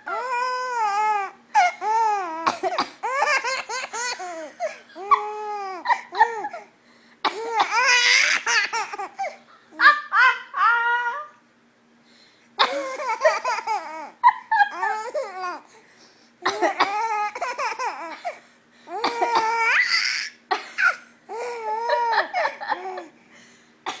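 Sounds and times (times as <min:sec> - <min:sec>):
baby laughing: 0:00.2 - 0:06.6, 0:07.4 - 0:11.3, 0:12.6 - 0:15.6.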